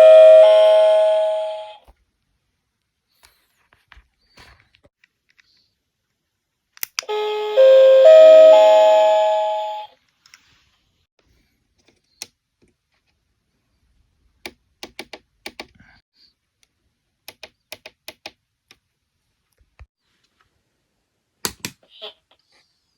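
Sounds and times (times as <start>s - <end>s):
electronic call button chime: 0.0s - 1.8s, 7.1s - 9.9s.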